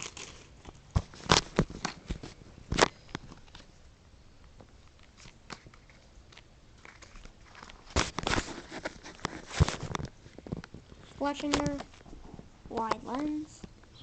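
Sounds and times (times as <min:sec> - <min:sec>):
foil wrapper rustling: 0:00.0 - 0:03.7, 0:05.0 - 0:11.0
cards handling noise: 0:00.0 - 0:03.8, 0:04.6 - 0:13.6.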